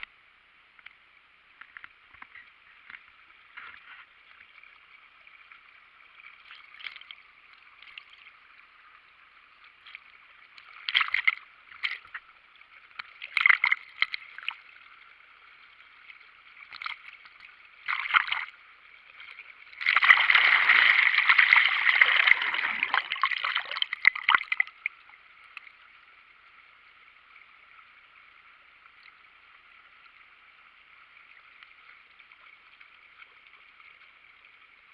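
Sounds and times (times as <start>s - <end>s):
water rushing over weir: 19.7s - 24.6s.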